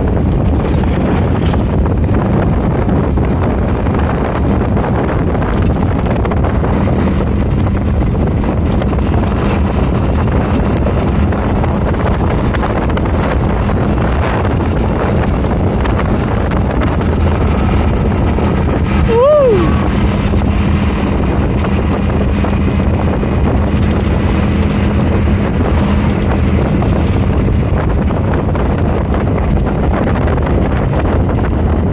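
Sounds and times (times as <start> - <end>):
vehicle engine hum: 0.0 - 31.9
wind buffeting microphone: 0.0 - 31.9.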